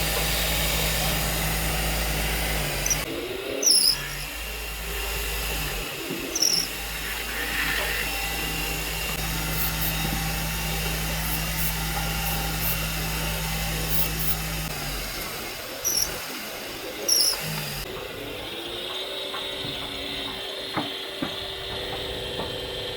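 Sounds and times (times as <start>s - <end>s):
power tool humming: 0.0s - 22.9s
high-pitched squeals: 6.2s - 8.4s, 15.8s - 16.3s, 17.0s - 17.5s.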